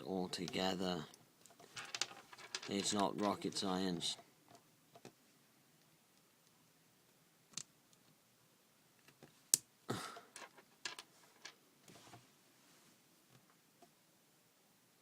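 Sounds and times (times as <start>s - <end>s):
plastic pieces clicking: 1.5s - 3.4s, 10.3s - 11.6s.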